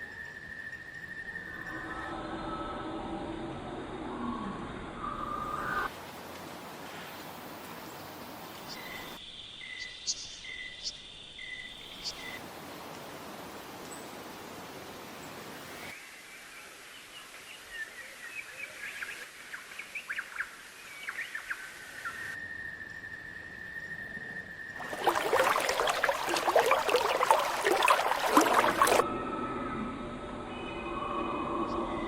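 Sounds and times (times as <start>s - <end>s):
high whistle-like tone: 0.0s - 3.0s.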